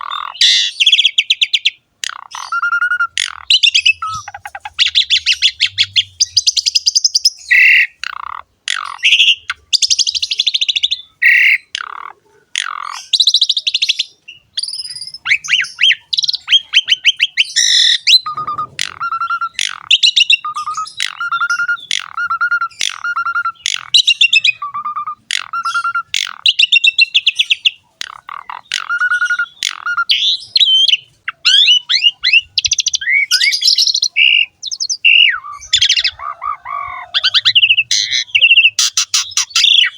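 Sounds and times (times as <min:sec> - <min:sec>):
starling singing rasping song: 0:14.4 - 0:39.9.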